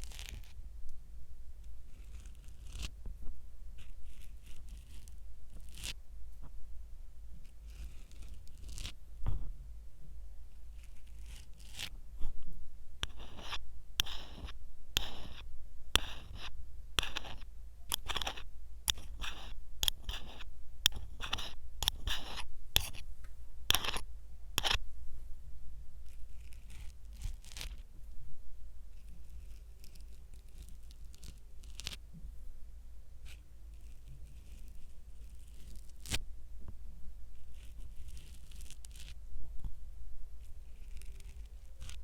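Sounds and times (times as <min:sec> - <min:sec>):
scratchy friction strokes: 0:00.0 - 0:00.6, 0:01.9 - 0:03.0, 0:03.8 - 0:06.0, 0:07.4 - 0:09.0, 0:10.5 - 0:23.0, 0:23.7 - 0:24.8, 0:26.0 - 0:27.8, 0:28.9 - 0:32.0, 0:33.2 - 0:36.2, 0:37.4 - 0:39.2, 0:40.4 - 0:42.0.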